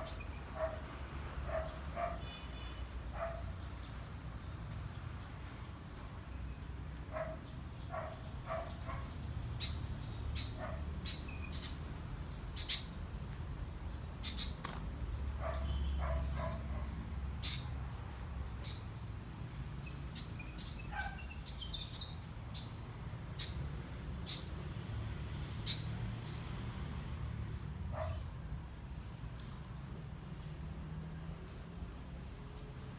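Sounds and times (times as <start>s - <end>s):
birds chirping: 0.0s - 0.8s, 1.4s - 5.6s, 6.2s - 26.5s, 27.9s - 30.8s.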